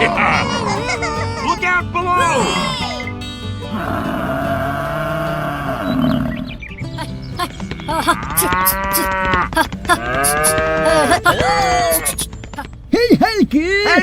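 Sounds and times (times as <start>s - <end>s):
cattle mooing: 0.0s - 0.9s, 3.7s - 6.5s, 8.1s - 12.2s.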